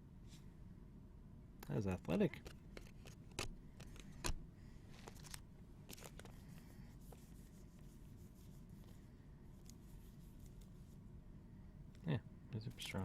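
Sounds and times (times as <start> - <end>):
cards tapping and scraping: 1.9 - 7.9.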